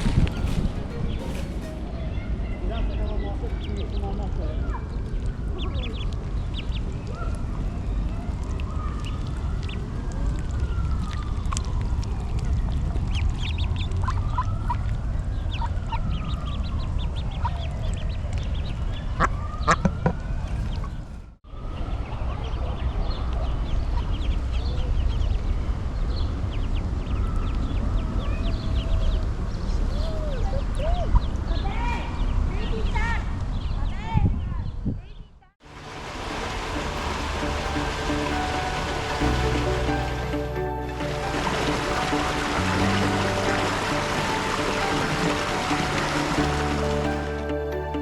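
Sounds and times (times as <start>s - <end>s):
ducks calling: 35.9s - 47.8s.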